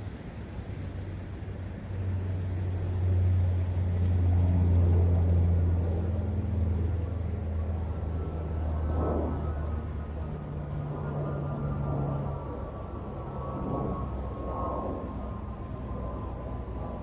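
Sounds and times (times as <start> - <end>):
forest brook rushing: 0.0 - 8.0
passing engine drone: 0.0 - 17.0.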